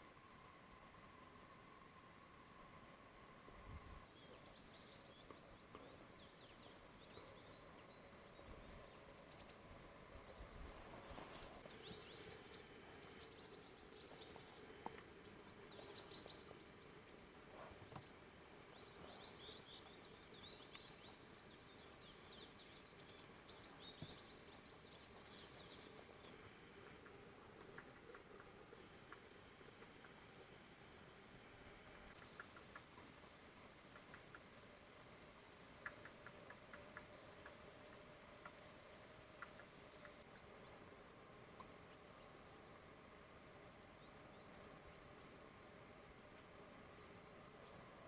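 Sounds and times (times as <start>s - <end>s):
background hiss: 0.0s - 48.0s
small birds chirping: 4.0s - 29.2s, 35.7s - 48.0s.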